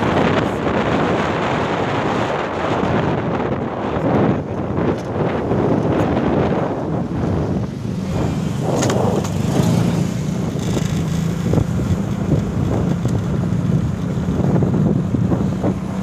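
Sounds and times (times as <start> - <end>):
wind buffeting microphone: 0.0 - 16.0
engine humming: 4.0 - 16.0.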